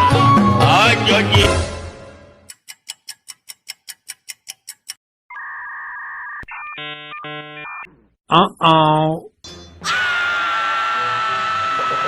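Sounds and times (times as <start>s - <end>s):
fast timer ticking: 2.5s - 5.0s.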